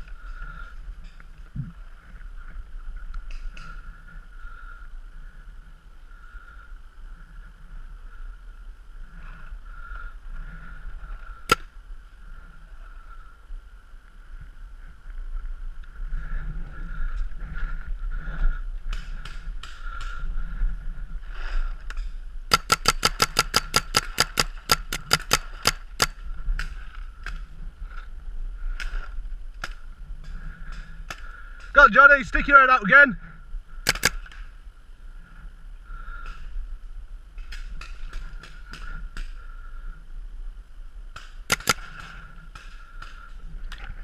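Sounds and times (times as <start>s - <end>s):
paintball markers firing: 22.5s - 26.7s, 33.8s - 34.4s, 41.2s - 43.2s.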